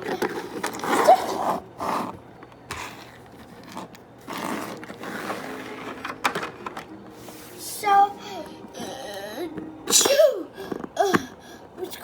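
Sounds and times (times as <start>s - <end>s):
scraping or rustling: 2.8s - 6.6s.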